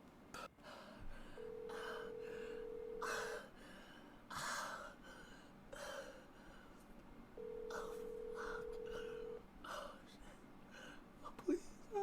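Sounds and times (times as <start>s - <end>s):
telephone ringback tone: 1.4s - 3.3s, 7.4s - 9.4s.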